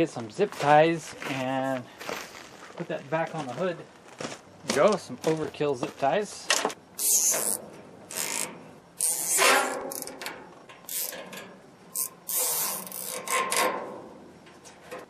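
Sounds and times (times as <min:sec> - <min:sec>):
zip ties ratcheting: 0:07.0 - 0:13.7.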